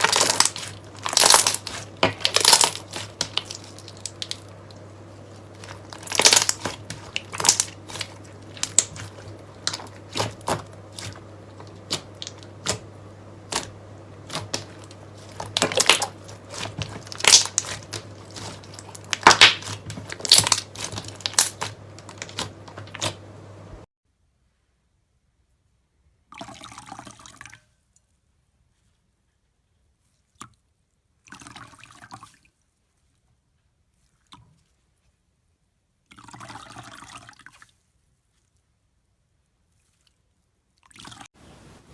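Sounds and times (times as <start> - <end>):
slime squishing with sticky crackles: 0.0 - 23.8.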